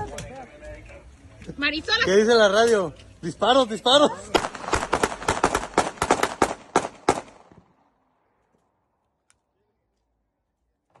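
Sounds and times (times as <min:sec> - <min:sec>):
rapid gunshots: 0:04.4 - 0:07.5.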